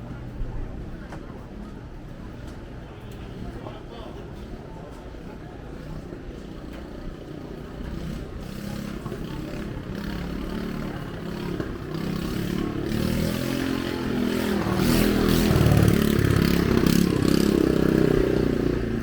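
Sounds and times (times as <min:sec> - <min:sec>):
vehicle engine passing by: 0:07.9 - 0:19.0.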